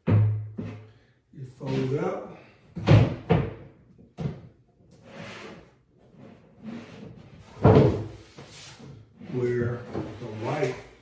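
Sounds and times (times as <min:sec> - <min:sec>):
furniture panels knocking and scraping: 0:02.8 - 0:04.5, 0:06.8 - 0:10.8.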